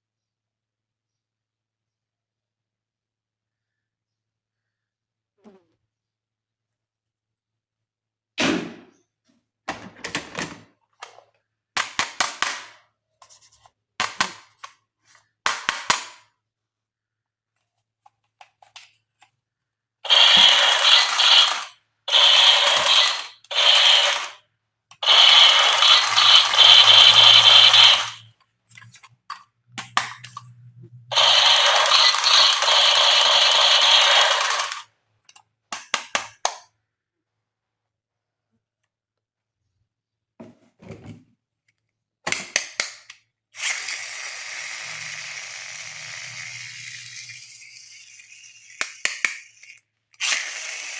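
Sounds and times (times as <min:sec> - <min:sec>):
toy gun handling scrapes and clicks: 0:18.0 - 0:19.4, 0:20.1 - 0:30.5, 0:31.1 - 0:36.7, 0:42.3 - 0:50.9
toy gun rattling bursts: 0:20.0 - 0:24.4, 0:25.0 - 0:28.3, 0:31.1 - 0:34.9, 0:43.6 - 0:50.9.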